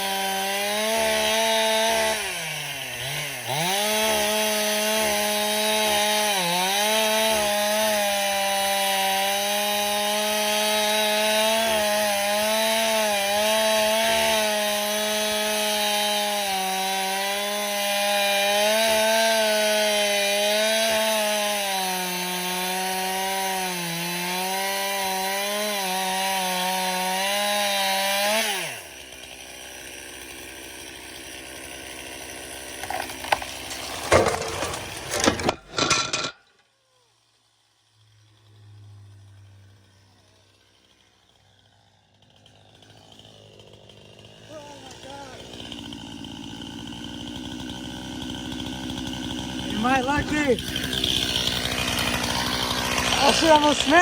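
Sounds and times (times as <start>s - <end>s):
chainsaw cutting wood: 0.0s - 54.0s.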